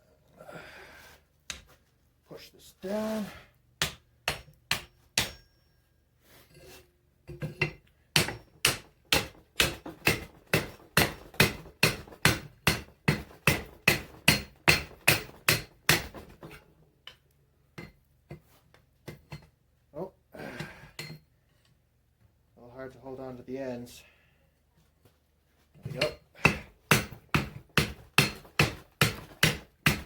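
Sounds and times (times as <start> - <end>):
hammer striking hot steel: 3.8 - 5.6, 8.2 - 16.2.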